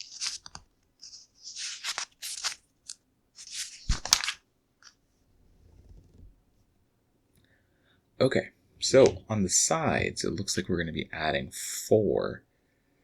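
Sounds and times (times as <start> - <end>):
plastic toy bricks rustling and clicking: 0.0 - 4.4.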